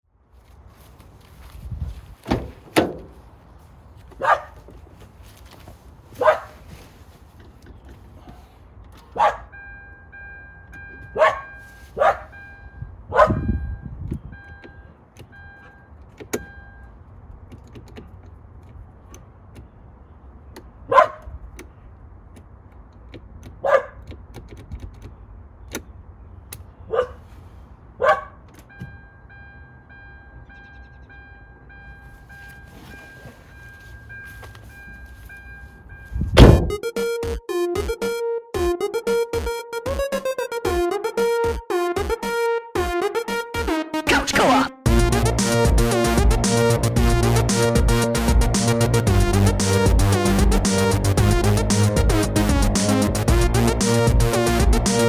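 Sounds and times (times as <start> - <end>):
dog barking: 4.2 - 4.6, 6.2 - 6.6, 9.1 - 9.5, 11.2 - 12.4, 13.1 - 13.5, 20.9 - 21.3, 23.6 - 24.0, 26.9 - 27.2, 28.0 - 28.4.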